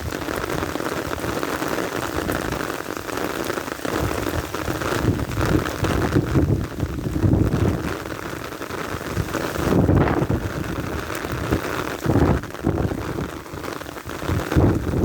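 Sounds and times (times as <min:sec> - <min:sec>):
rain drumming on an umbrella: 0:00.0 - 0:15.0
wind gusts buffeting: 0:03.9 - 0:08.2, 0:09.0 - 0:15.0.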